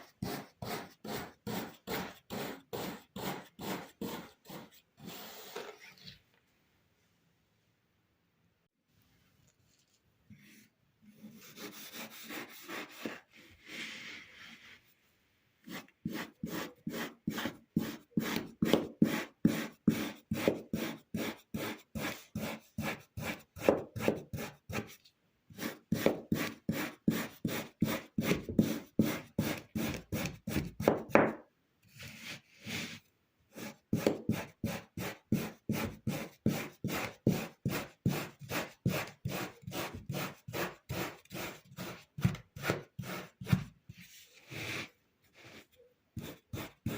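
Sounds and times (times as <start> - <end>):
knife slicing kinetic sand: 0.0 - 5.5, 15.7 - 31.1, 31.9 - 43.7.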